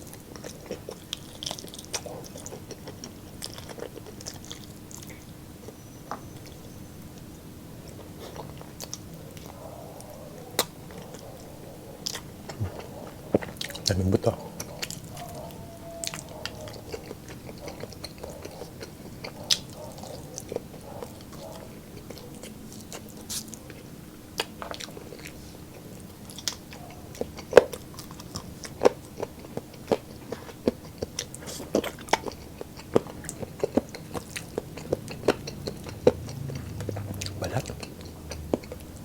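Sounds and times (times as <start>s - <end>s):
chewing and biting meat: 0.0s - 6.6s, 7.3s - 39.0s.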